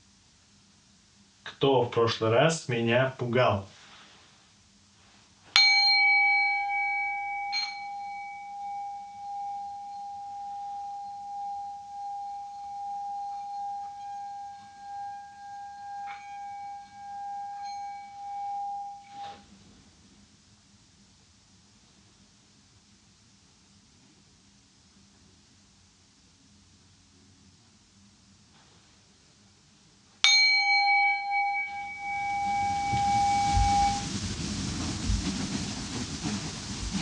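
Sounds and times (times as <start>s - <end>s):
singing bowl ringing: 5.5s - 19.4s, 30.2s - 34.4s.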